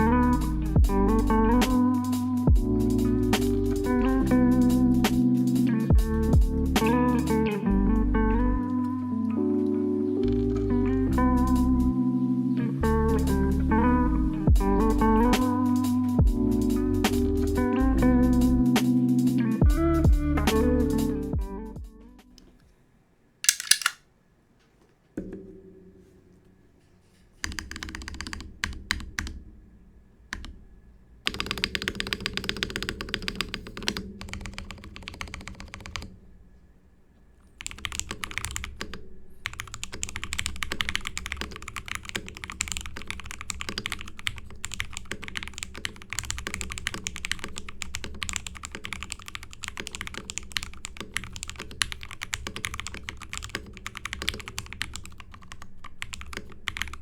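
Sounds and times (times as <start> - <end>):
typing on mechanical keyboard: 27.4 - 29.4, 31.3 - 36.1, 37.6 - 57.0.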